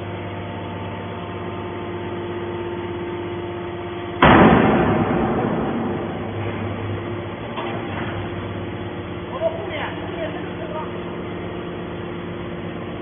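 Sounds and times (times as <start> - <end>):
machine humming: 0.0 - 13.0
loud crash: 4.2 - 7.2.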